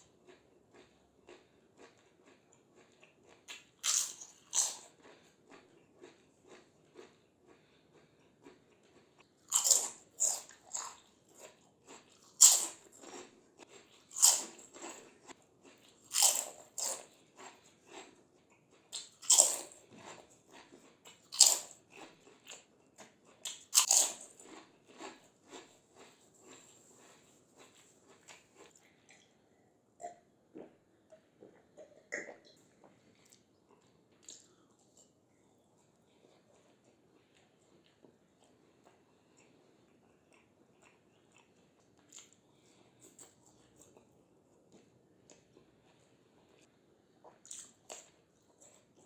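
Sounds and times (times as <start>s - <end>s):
crackling chewing: 0.0s - 29.3s, 32.7s - 49.0s
loud crunching bites: 9.5s - 11.0s, 11.9s - 13.3s, 16.1s - 17.1s, 21.3s - 21.8s, 23.5s - 25.6s.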